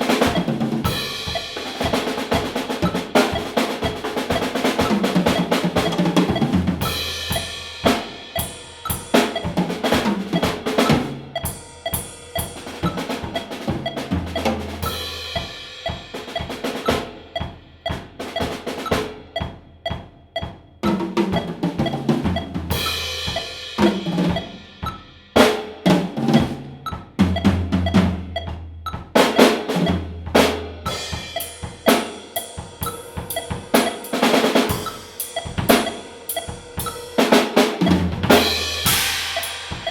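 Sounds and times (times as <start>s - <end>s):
bass drum: 0.0s - 25.0s, 26.0s - 34.0s, 37.8s - 39.9s
snare and tom fills: 0.0s - 39.9s
cymbal crashes: 38.4s - 39.9s.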